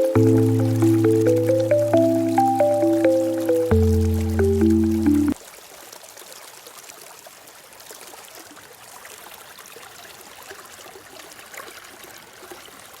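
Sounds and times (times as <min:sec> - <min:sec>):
rain hiss: 0:00.0 - 0:05.4.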